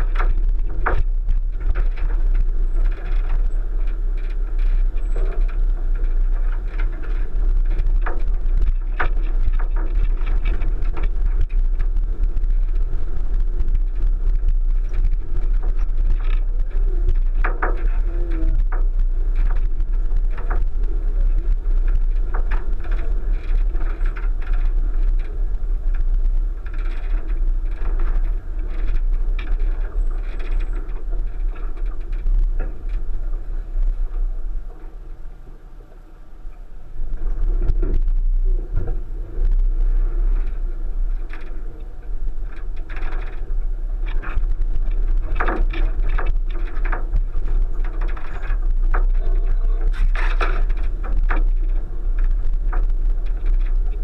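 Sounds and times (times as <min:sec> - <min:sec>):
knocks and clatters: 0:00.0 - 0:34.2
car engine low rumble: 0:00.0 - 0:54.0.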